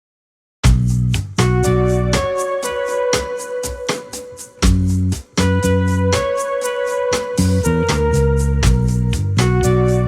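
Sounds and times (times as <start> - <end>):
instrumental music with steady beat: 0.6 - 10.0
deep bass note: 0.7 - 2.3, 7.5 - 10.0
held keyboard chords: 1.4 - 10.0.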